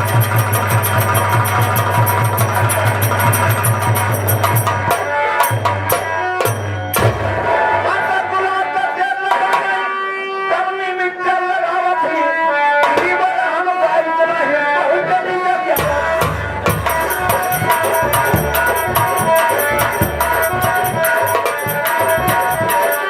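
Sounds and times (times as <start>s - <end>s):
tabla and drums beat: 0.0s - 10.2s, 12.2s - 13.7s, 15.8s - 23.0s
sustained melody: 15.8s - 23.0s.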